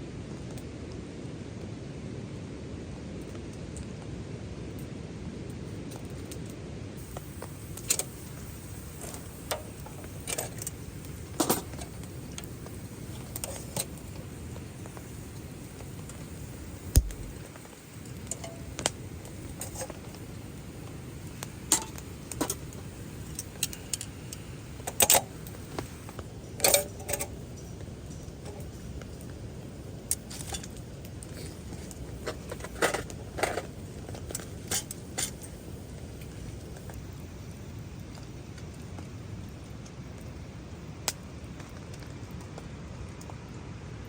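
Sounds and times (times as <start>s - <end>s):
light metallic clinks: 7.0s - 29.4s
rain hissing: 7.0s - 44.0s
sharp clicks: 16.9s - 29.3s.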